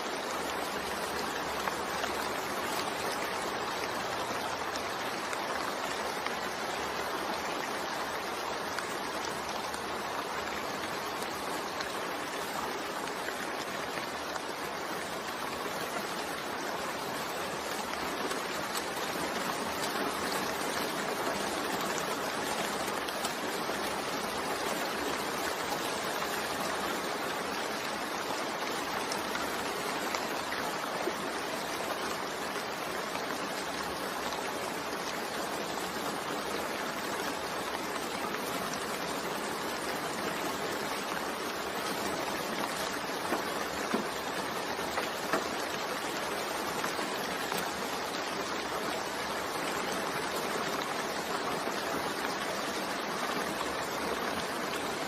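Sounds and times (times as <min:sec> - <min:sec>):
steady rain hissing: 0:00.0 - 0:55.0
rain drop ticks: 0:41.2 - 0:48.3.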